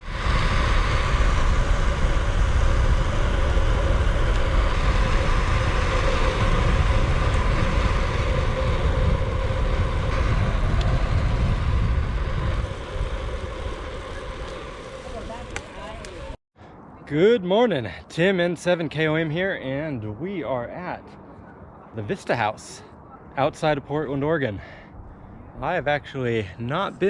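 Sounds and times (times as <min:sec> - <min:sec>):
bicycle rolling: 0:00.0 - 0:16.4
low rumble: 0:00.0 - 0:17.1, 0:22.7 - 0:27.0
rushing wind: 0:00.0 - 0:27.0.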